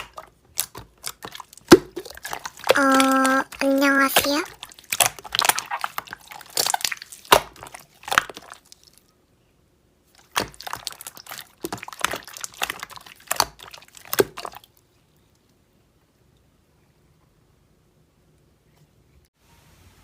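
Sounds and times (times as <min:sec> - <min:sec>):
slime air pockets popping: 0:00.0 - 0:08.6, 0:10.2 - 0:14.6
slime squishing: 0:00.0 - 0:09.1, 0:10.1 - 0:15.6.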